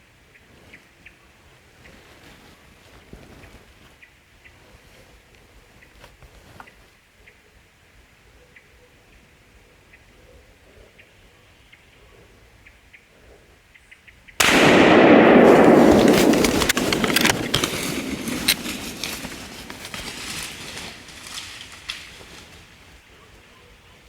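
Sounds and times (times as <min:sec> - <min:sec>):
rifle shot echoing: 0:14.4 - 0:20.9
faint sharp clicks: 0:14.4 - 0:22.5.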